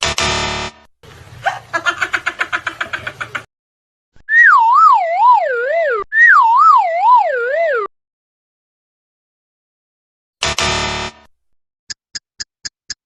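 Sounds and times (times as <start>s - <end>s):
warbling whistle sliding down: 4.3s - 7.9s.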